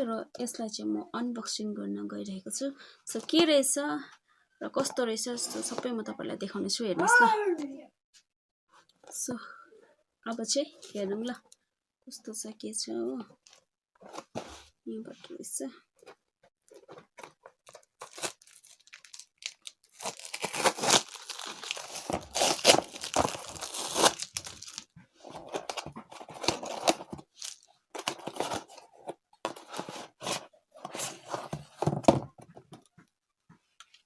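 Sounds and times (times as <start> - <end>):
wrapping crinkling: 16.7 - 24.9, 25.5 - 28.7
packaging being torn open: 17.6 - 24.9.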